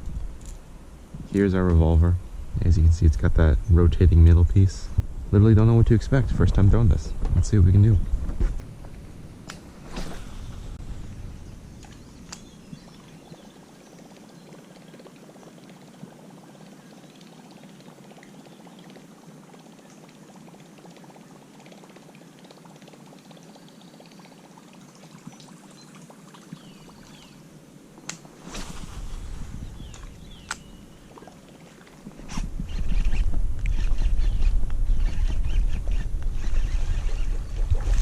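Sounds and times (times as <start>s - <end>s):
lure churning water: 11.8s - 38.0s.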